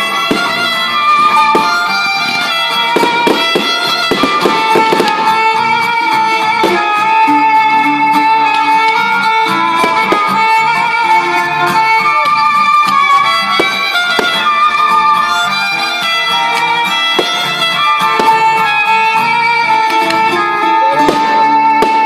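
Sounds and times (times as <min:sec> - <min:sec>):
loud music with sustained melody: 0:00.0 - 0:22.0
firework bangs and crackles: 0:00.2 - 0:06.8, 0:21.0 - 0:22.0.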